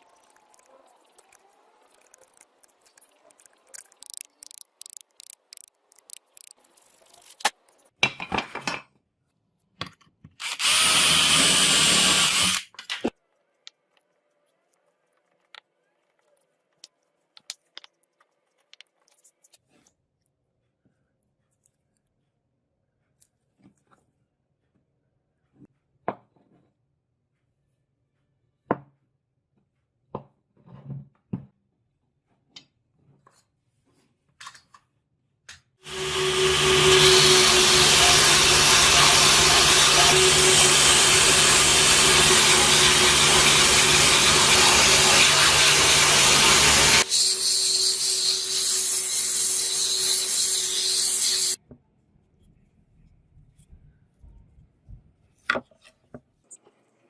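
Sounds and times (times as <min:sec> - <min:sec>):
power tool grinding: 0:10.4 - 0:12.7, 0:35.8 - 0:51.6.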